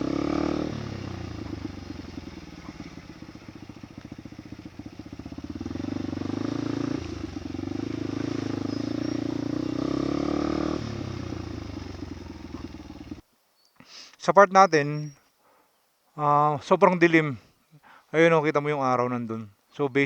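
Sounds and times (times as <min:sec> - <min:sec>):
motorcycle engine running: 0:00.0 - 0:13.2.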